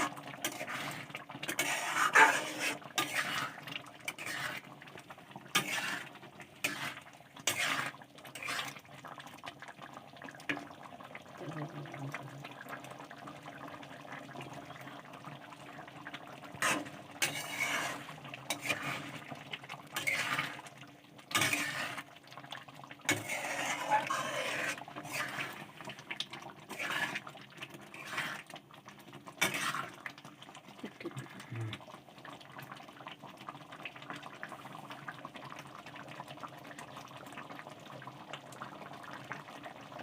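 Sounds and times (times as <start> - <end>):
water pouring and splashing: 0.0 - 13.4, 14.1 - 31.8.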